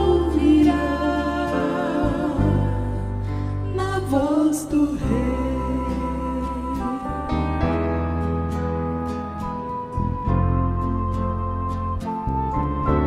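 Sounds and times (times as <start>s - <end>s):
women singing long held notes: 0.0s - 7.5s
instrumental accompaniment with bass: 0.0s - 13.0s.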